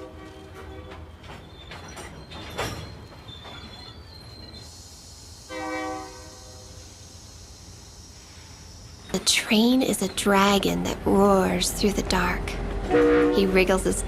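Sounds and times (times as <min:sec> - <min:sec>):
freight train rumbling: 0:00.0 - 0:14.0
wheel clanks: 0:00.9 - 0:04.1
thin high squeal: 0:01.3 - 0:07.1
locomotive horn blast: 0:05.5 - 0:06.8, 0:12.8 - 0:14.0.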